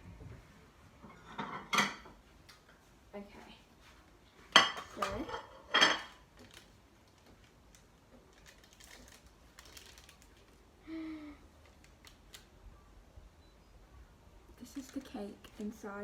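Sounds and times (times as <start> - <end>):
plate and cutlery clinking: 1.0 - 2.2, 4.6 - 6.2.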